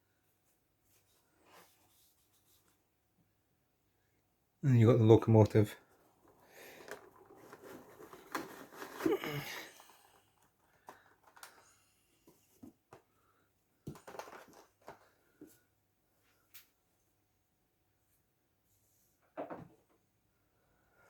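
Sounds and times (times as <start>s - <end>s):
plastic and card crinkling: 5.9s - 11.8s, 13.9s - 15.1s.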